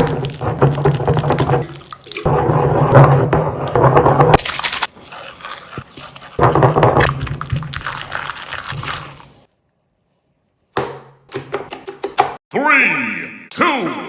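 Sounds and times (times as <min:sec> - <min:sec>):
wet slime crackling and crushing: 0:04.4 - 0:09.5.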